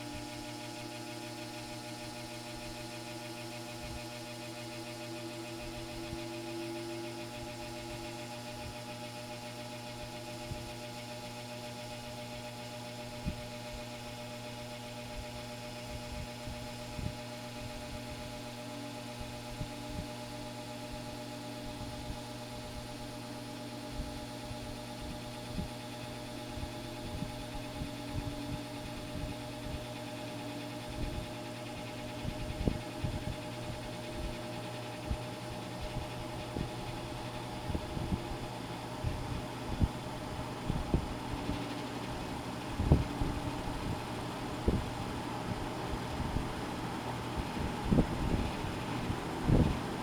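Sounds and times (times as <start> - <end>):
electric motor hum: 2.7 - 10.8, 26.4 - 50.0
fan air rushing: 26.4 - 50.0.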